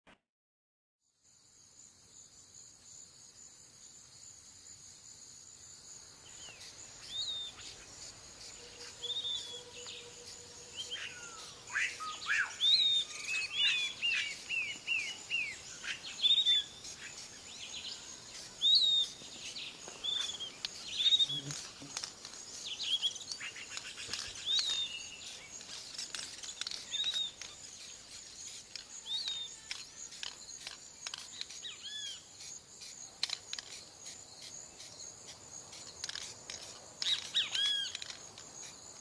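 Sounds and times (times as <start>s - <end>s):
high insect buzz: 1.1s - 39.0s
birds whistling: 8.5s - 10.2s, 10.8s - 21.8s, 22.6s - 25.6s, 26.5s - 27.5s.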